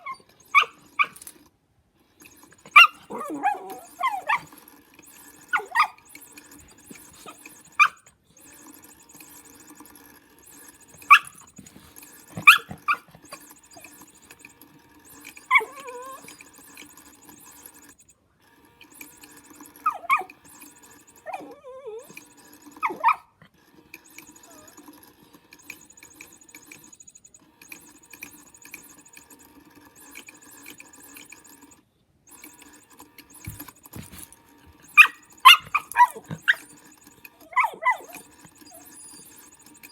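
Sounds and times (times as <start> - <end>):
puppy barking and yipping: 0.0 - 1.3, 2.3 - 8.6, 10.4 - 14.4, 15.1 - 16.8, 19.7 - 23.4, 24.2 - 24.9, 33.3 - 39.9
puppy whining: 0.0 - 1.4, 2.2 - 18.1, 18.9 - 27.0, 32.4 - 39.9
toy motor whirring: 0.0 - 39.9.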